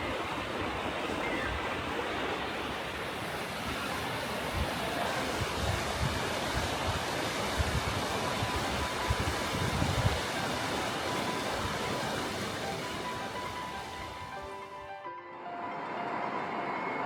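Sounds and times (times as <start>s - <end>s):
steady outdoor rushing noise: 0.0s - 17.0s
wind buffeting microphone: 4.5s - 10.4s.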